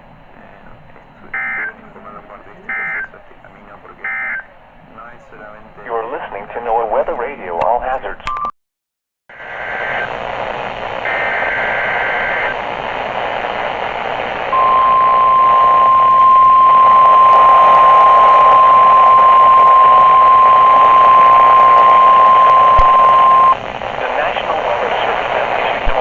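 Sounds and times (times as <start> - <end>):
radio static: 0.4 - 8.3, 9.4 - 26.0
steady warning alarm tone: 1.2 - 4.5, 11.0 - 12.6, 13.3 - 23.6.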